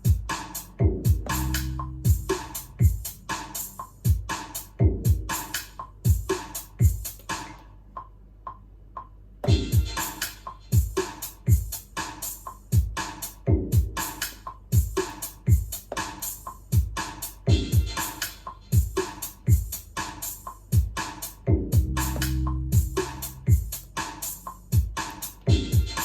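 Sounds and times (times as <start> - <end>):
deep kick drums: 0.0 - 3.2, 4.0 - 7.2, 10.8 - 11.9, 12.7 - 14.1, 14.7 - 18.0, 18.8 - 20.0, 20.7 - 26.0
hi-hats: 0.0 - 7.7, 9.4 - 26.0
electro house beat: 0.0 - 8.1, 9.0 - 26.0.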